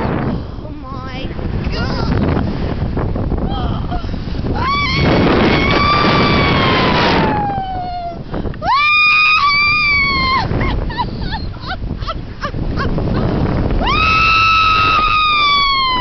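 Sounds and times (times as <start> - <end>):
wind on microphone: 0.0 - 16.0.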